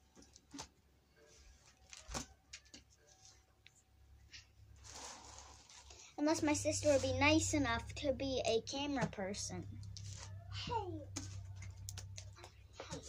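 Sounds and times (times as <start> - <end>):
soft rustle: 4.7 - 7.3.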